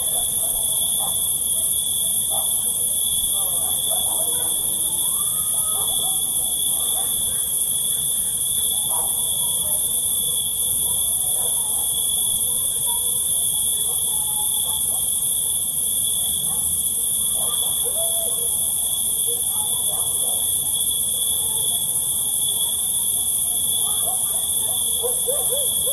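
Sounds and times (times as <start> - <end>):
crickets trilling: 0.0 - 25.9
insects hissing: 0.0 - 25.9
faint animal chirps: 5.1 - 7.2.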